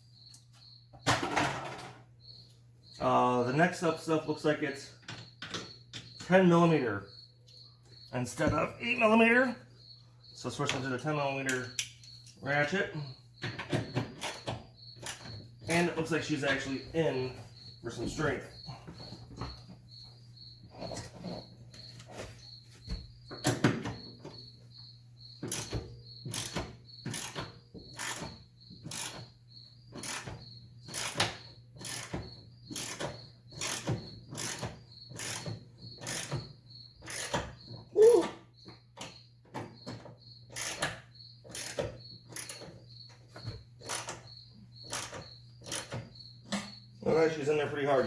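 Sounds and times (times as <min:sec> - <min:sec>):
cricket chirping: 0:00.0 - 0:48.0
ratchet wrench clicking: 0:25.5 - 0:29.3, 0:30.0 - 0:36.4, 0:37.0 - 0:37.4, 0:40.5 - 0:40.9, 0:41.5 - 0:42.7, 0:43.8 - 0:44.2, 0:44.9 - 0:46.0.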